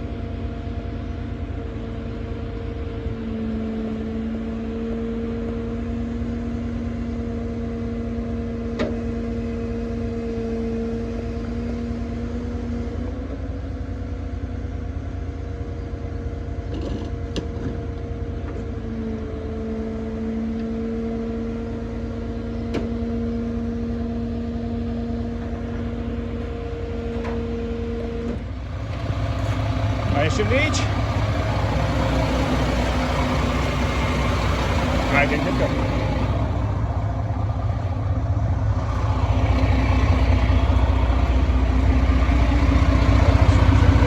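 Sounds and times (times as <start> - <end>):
diesel engine humming: 23.3 - 44.0.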